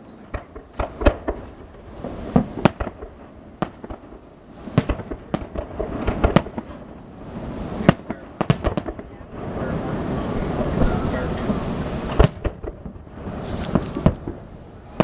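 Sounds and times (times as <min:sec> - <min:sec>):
fireworks bangs and pops: 0:00.0 - 0:15.0.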